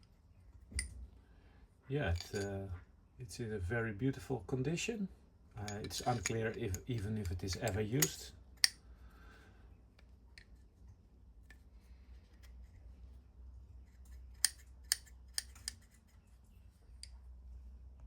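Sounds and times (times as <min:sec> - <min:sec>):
small metal parts clicking: 0:02.1 - 0:02.5, 0:05.6 - 0:08.8, 0:14.4 - 0:15.9.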